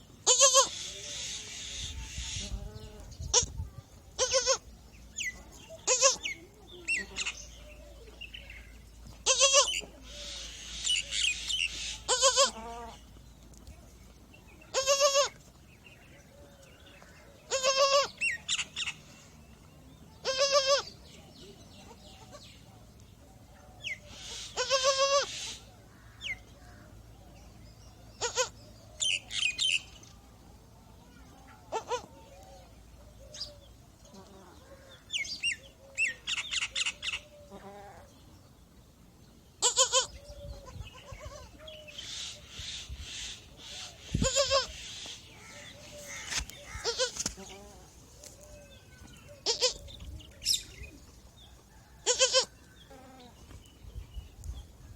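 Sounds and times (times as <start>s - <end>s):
goat kid bleating: 0.2s - 0.9s, 2.3s - 4.7s, 5.3s - 7.6s, 9.2s - 9.9s, 11.7s - 13.1s, 14.6s - 15.4s, 17.5s - 18.4s, 20.2s - 21.0s, 24.3s - 25.6s, 28.2s - 28.6s, 31.6s - 32.2s, 37.5s - 38.0s, 39.6s - 41.6s, 44.1s - 44.8s, 45.4s - 48.4s, 49.1s - 50.1s, 52.0s - 53.4s
birds chirping: 39.2s - 54.7s.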